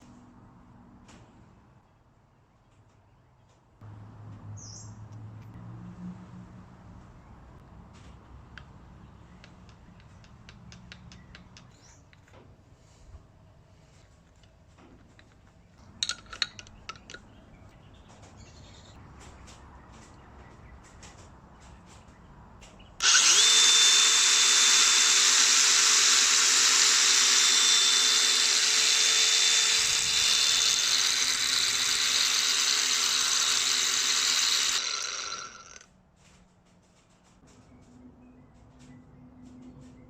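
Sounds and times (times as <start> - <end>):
angle grinder running with whine: 23.0 - 35.8.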